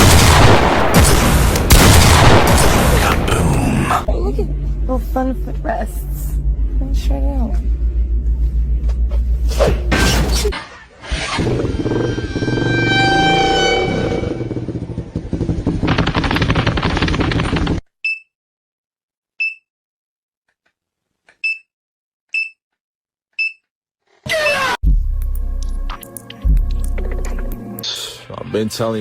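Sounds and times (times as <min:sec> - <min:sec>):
crackling rattle: 0:14.8 - 0:17.8.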